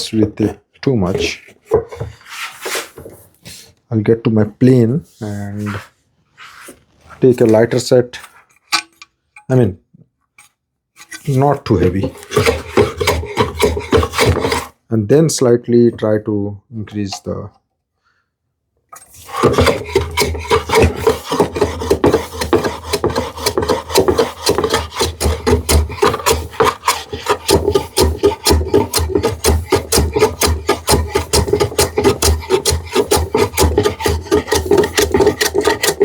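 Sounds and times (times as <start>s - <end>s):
hand saw cutting wood: 11.0s - 14.8s, 19.0s - 36.0s.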